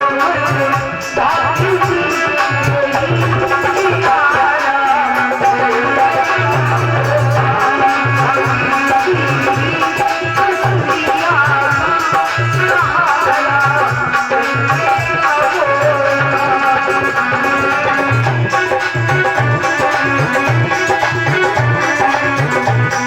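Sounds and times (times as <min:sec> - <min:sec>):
hand drum rhythm: 0:00.0 - 0:23.0.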